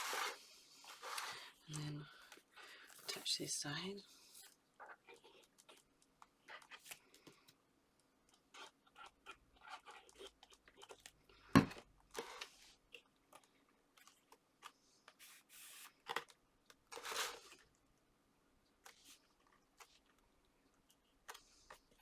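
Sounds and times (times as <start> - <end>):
paper card rustling and scraping: 0.0 - 1.6, 15.1 - 16.2, 16.9 - 17.6.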